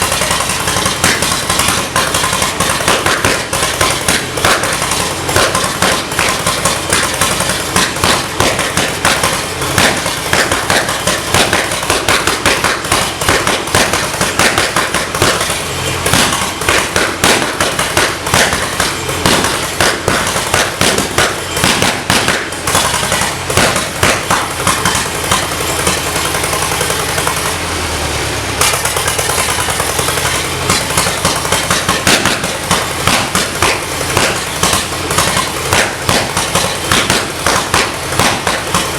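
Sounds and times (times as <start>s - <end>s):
locomotive engine running loud: 0.0s - 38.9s.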